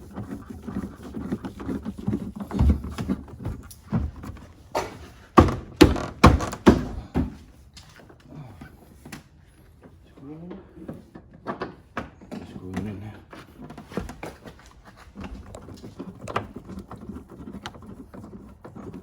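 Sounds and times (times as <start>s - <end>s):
hand tool knocking on plastic fastener: 1.5s - 7.4s.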